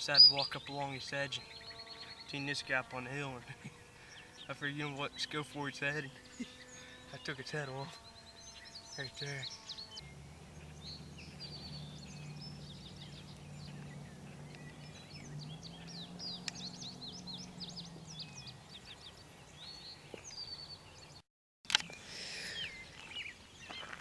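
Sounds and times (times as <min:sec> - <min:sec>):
small birds chirping: 0:00.0 - 0:21.2, 0:21.8 - 0:24.0
faint low hum: 0:00.6 - 0:19.7.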